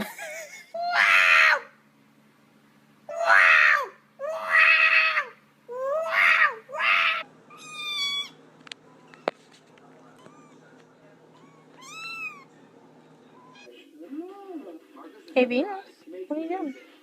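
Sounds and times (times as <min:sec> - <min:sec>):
cat yowling: 0:00.8 - 0:01.7, 0:03.1 - 0:08.4, 0:10.2 - 0:10.6, 0:11.3 - 0:12.5
cat meowing: 0:05.9 - 0:08.4, 0:10.2 - 0:10.6, 0:11.3 - 0:12.5.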